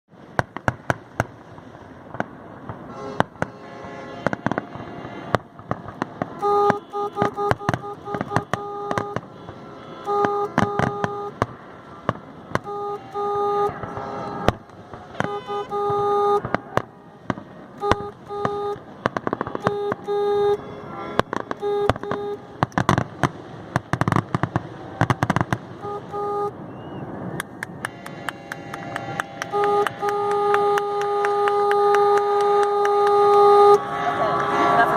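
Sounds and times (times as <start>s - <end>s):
fireworks bangs and crackles: 0.1s - 34.9s
horn honking: 2.8s - 11.6s, 12.5s - 17.1s, 17.7s - 22.7s, 25.8s - 26.6s, 27.8s - 34.9s.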